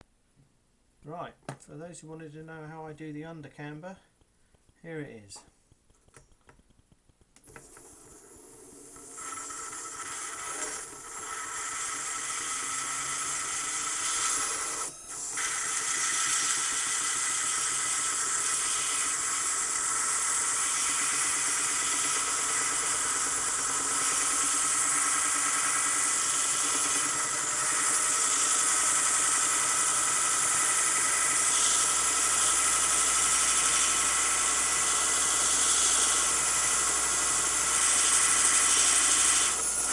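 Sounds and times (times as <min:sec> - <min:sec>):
motor whine: 0:07.5 - 0:39.9
belt grinder grinding metal: 0:08.8 - 0:39.9.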